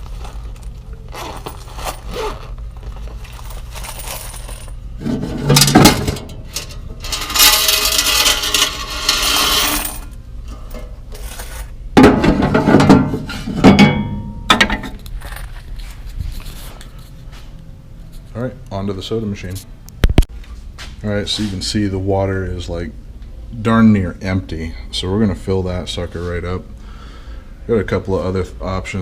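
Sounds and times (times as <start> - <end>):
coins clattering and pouring: 3.2 - 4.8, 7.0 - 10.0.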